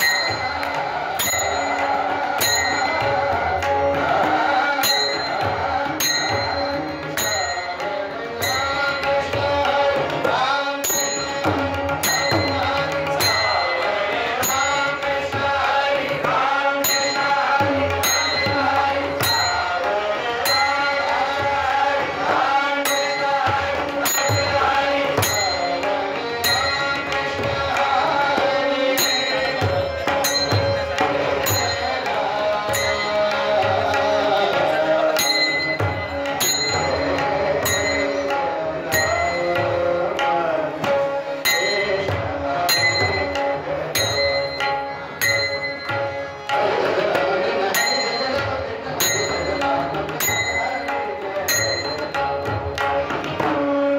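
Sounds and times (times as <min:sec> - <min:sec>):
devotional music with tabla: 0:00.0 - 0:53.9.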